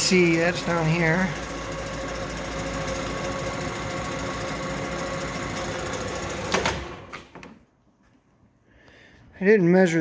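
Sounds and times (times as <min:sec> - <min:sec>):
lathe gear whine and hum: 0:00.0 - 0:07.1.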